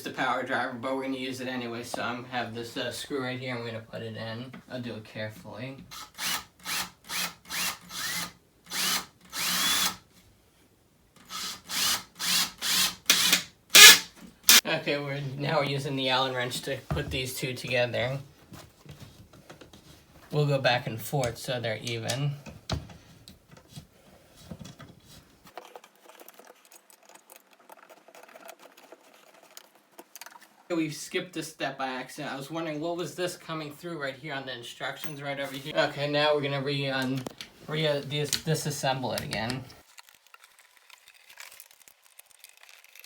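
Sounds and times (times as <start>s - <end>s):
power driver driving a screw: 6.0s - 10.0s, 11.2s - 14.6s.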